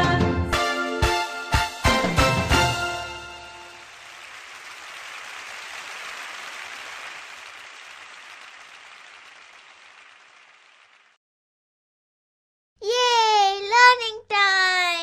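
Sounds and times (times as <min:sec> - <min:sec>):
applause: 0:03.0 - 0:11.2.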